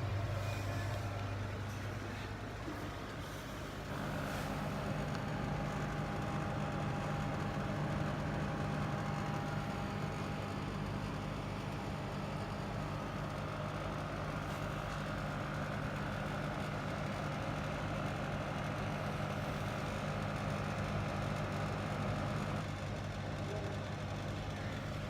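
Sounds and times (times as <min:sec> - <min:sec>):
laser cutting machine humming: 0:00.0 - 0:14.3.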